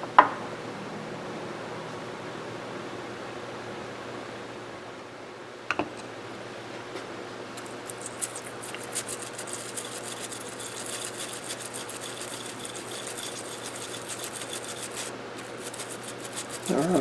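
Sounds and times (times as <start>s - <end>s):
brush scrubbing metal: 7.6s - 17.0s.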